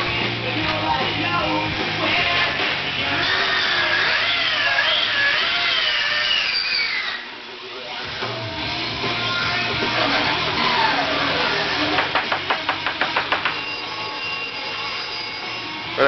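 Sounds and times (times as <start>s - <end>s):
rock music with guitar: 0.0s - 4.2s, 7.6s - 16.0s.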